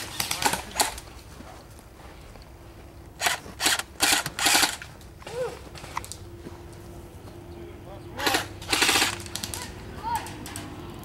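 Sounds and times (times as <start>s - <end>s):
footsteps crunching on gravel: 4.9s - 7.0s.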